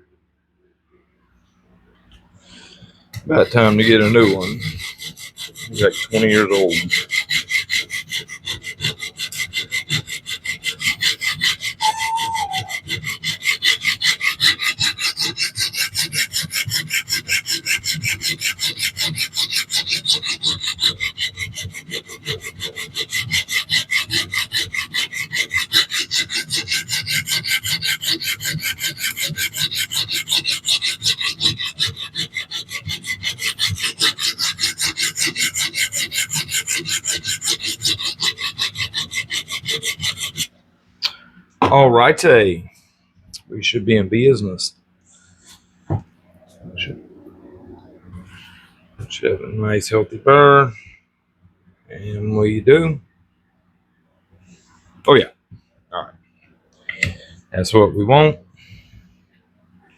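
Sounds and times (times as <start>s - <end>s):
diamond plate grinding knife edge: 2.6s - 40.5s
brief squeak: 11.8s - 12.7s.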